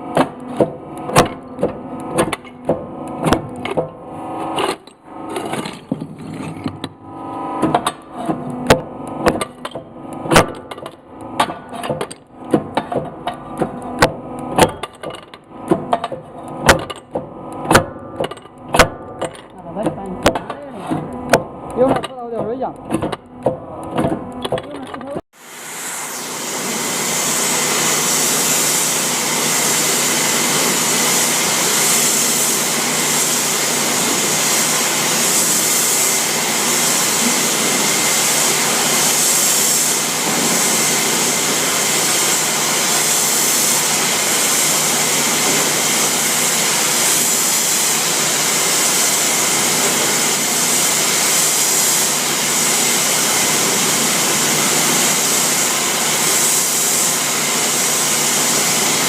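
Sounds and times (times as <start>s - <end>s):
machinery rushing noise: 24.8s - 59.0s.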